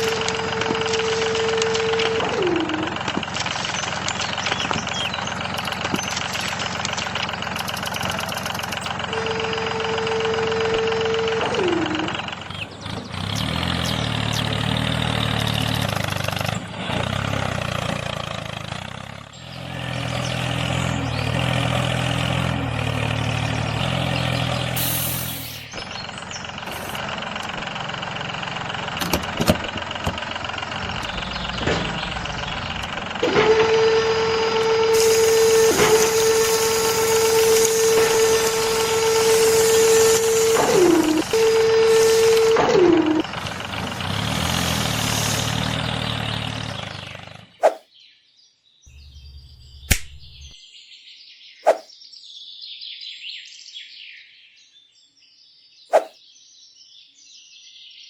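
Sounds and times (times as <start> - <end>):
small motor high whine: 0.0 - 16.8, 22.4 - 27.5, 29.0 - 43.7
lower engine rumble: 0.0 - 47.8, 48.9 - 50.6.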